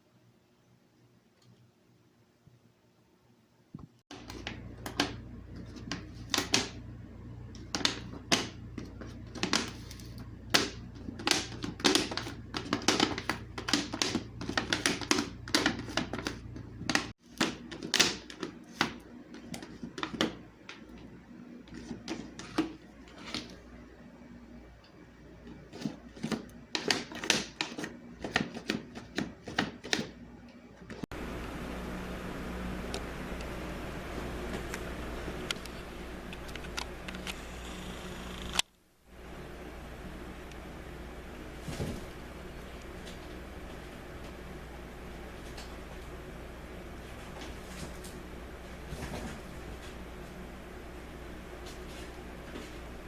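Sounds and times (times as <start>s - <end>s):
low steady hum: 0.0s - 17.2s, 30.2s - 53.0s.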